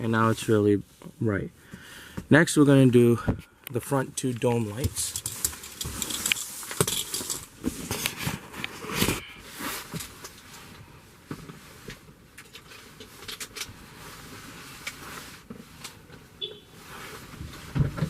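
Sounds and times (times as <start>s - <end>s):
handling clicks knocks and rustles: 3.6s - 13.8s.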